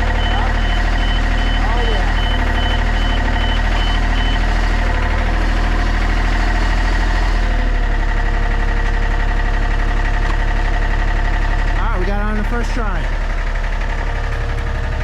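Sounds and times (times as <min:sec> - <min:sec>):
short electronic beeps: 0:00.0 - 0:04.5
excavator diesel engine running: 0:00.0 - 0:15.0.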